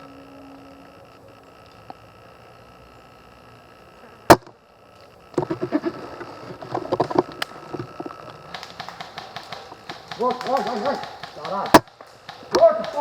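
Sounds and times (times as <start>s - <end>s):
faint steady hum: 0.0s - 13.0s
airsoft gunfire: 8.4s - 13.0s.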